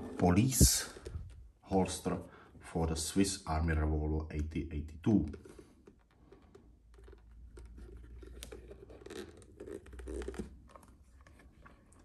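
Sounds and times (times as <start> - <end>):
leather holster scratching and rubbing: 5.4 - 12.0.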